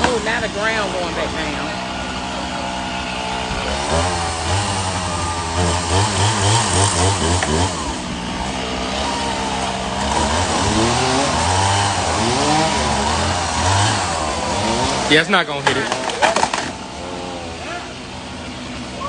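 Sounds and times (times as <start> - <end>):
machinery engine revving: 0.0 - 19.0.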